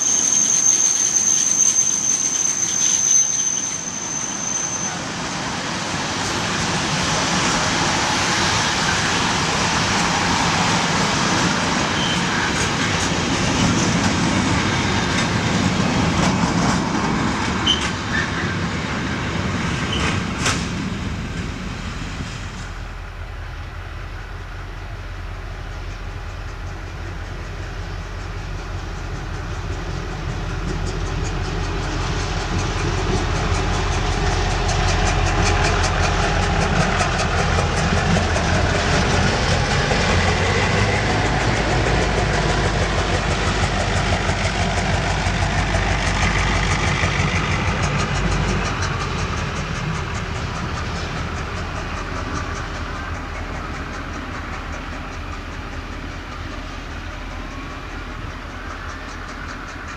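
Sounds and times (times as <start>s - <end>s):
diesel train engine drone: 0.0s - 59.9s
wagons rattling over rail joints: 25.7s - 59.9s.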